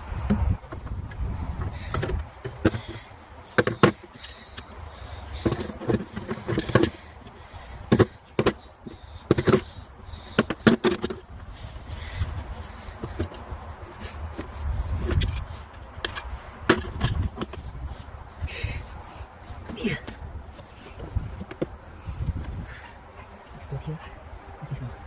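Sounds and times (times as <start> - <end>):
hand tools clicking and knocking: 0.2 - 11.4, 12.5 - 17.8.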